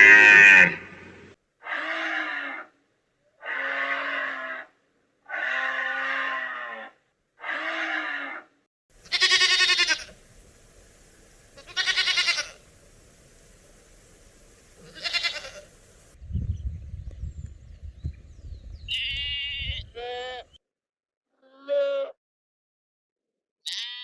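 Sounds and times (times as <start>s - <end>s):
livestock bleating: 0.0s - 0.8s, 1.6s - 2.7s, 3.4s - 4.7s, 5.3s - 10.3s, 11.6s - 12.7s, 14.8s - 15.8s, 18.9s - 20.6s, 21.4s - 22.2s, 23.6s - 24.0s
steady hiss: 8.9s - 16.2s
low wind rumble on microphone: 15.8s - 20.1s.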